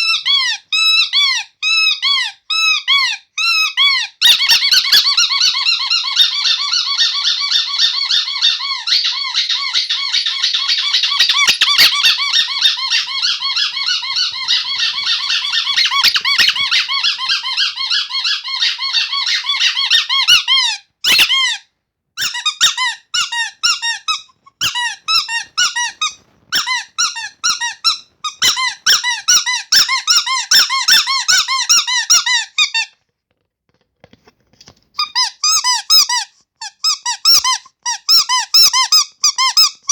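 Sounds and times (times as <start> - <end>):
rubber squeaky toy squeaking: 0.0 - 33.0, 35.0 - 39.9.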